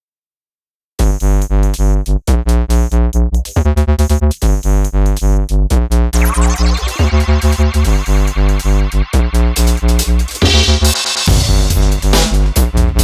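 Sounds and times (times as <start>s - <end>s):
electronic music: 6.2s - 13.0s.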